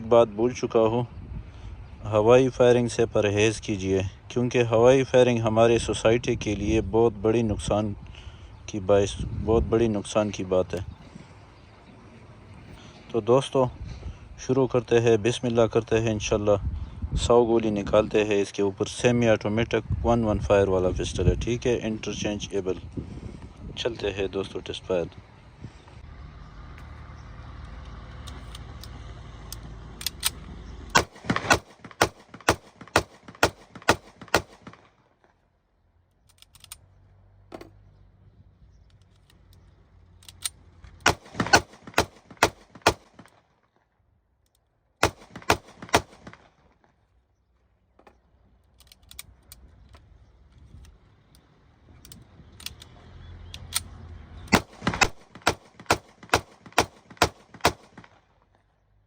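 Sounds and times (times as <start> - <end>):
wind rumbling on microphone: 0.0 - 27.2
pistol shots: 30.9 - 34.9, 41.0 - 43.3, 45.0 - 46.5, 54.5 - 58.2.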